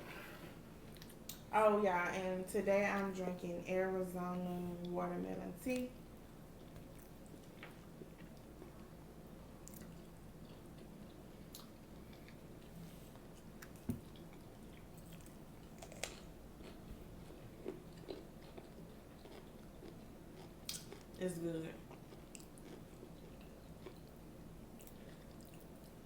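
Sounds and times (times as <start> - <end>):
close-up chewing and biting: 13.4 - 21.2, 21.9 - 26.0.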